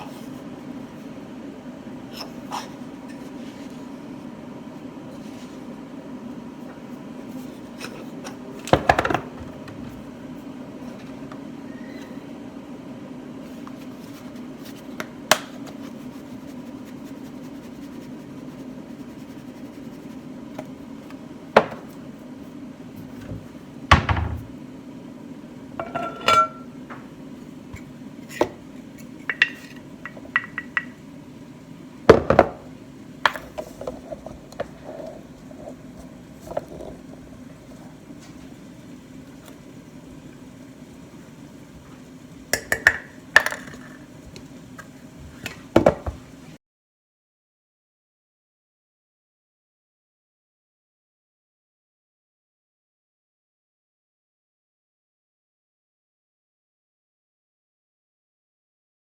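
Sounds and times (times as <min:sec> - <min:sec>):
steady low hum: 0:00.0 - 0:45.4
pans and utensils clattering: 0:25.8 - 0:26.8, 0:29.2 - 0:31.0.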